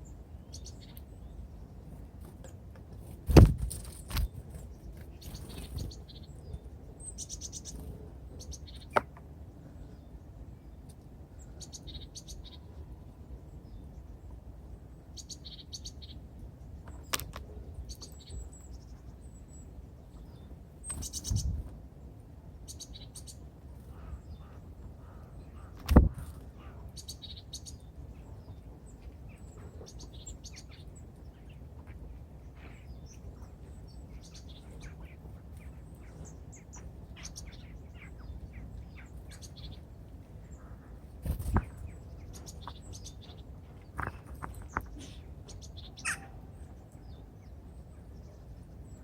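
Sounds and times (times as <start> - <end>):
small birds chirping: 0.0 - 49.0.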